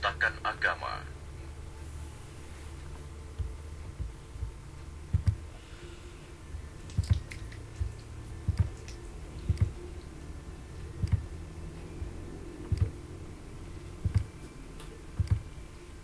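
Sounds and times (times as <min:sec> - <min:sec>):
faint steady hum: 0:00.0 - 0:16.0
computer mouse clicks: 0:15.2 - 0:15.5.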